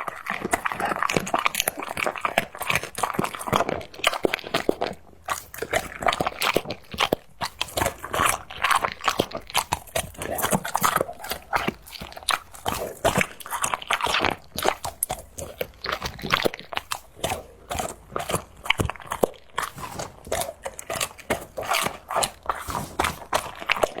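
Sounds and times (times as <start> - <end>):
dog crunching on bone: 0.0 - 24.0.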